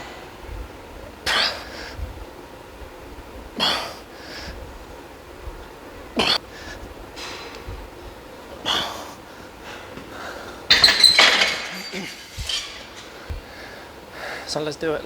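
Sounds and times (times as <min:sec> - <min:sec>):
man breathing heavily: 0:01.2 - 0:02.3, 0:03.6 - 0:07.0, 0:07.7 - 0:10.7, 0:13.2 - 0:14.5.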